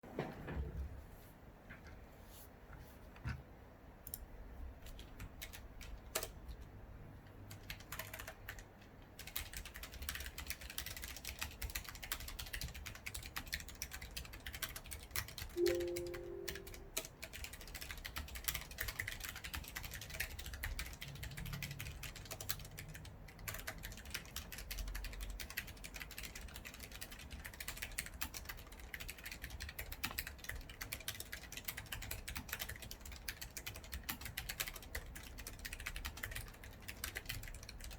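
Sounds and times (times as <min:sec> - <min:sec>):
mechanical keyboard typing: 0:04.1 - 0:06.7, 0:07.5 - 0:37.9
two-pitched tone: 0:15.6 - 0:17.0.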